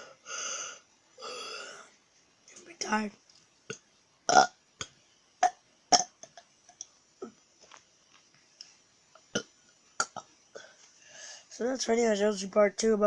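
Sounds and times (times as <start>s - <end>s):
person burping: 3.7s - 4.6s, 5.4s - 6.4s, 9.3s - 10.3s.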